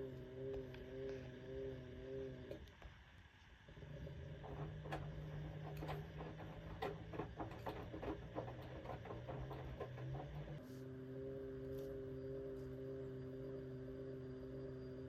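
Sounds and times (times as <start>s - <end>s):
washing machine motor hum: 0.0s - 15.0s
clicks and knocks: 4.4s - 10.6s.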